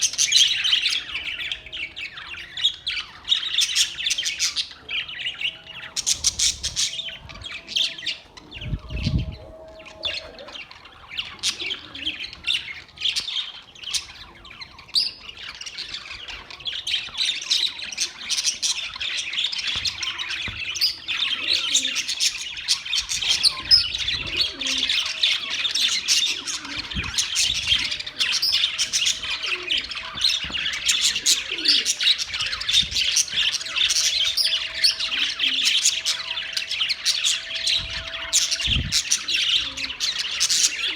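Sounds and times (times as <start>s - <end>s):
budgerigars chattering: 10.6s - 40.9s.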